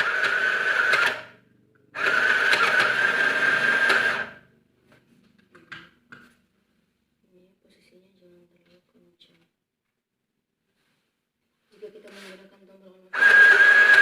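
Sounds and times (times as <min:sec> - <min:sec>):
sewing machine running: 0:00.0 - 0:01.4, 0:02.0 - 0:04.4, 0:13.2 - 0:14.0.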